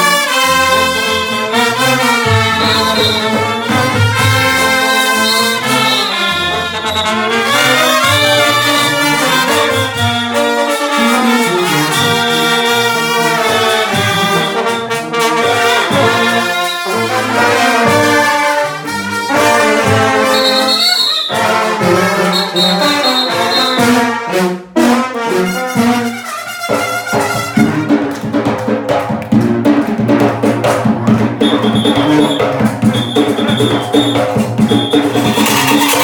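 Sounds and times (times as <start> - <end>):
live band playing: 0.0 - 36.0.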